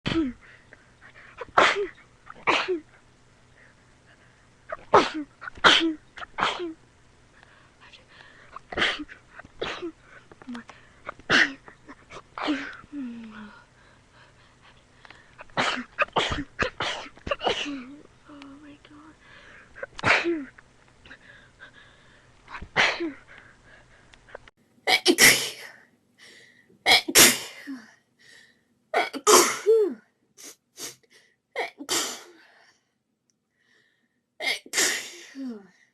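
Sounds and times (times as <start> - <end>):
person sneezing: 1.4 - 2.8, 24.9 - 25.8, 26.9 - 27.8, 29.0 - 31.0, 31.6 - 32.4, 34.4 - 35.6.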